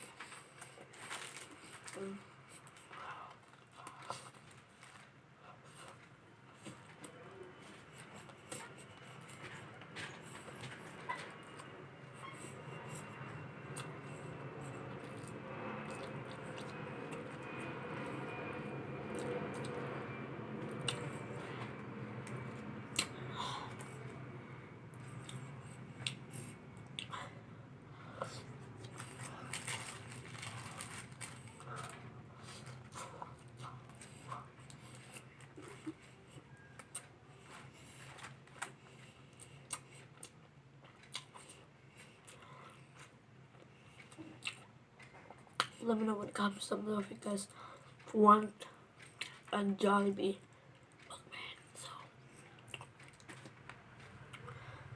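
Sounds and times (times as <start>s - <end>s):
person chewing food: 5.7s - 24.2s, 24.9s - 27.5s, 28.2s - 45.8s, 48.9s - 49.5s, 50.7s - 54.9s
low hum: 7.3s - 38.0s
chewing clicks and smacks: 20.6s - 21.5s, 22.2s - 24.0s, 33.4s - 45.8s, 49.0s - 49.6s, 51.8s - 54.6s.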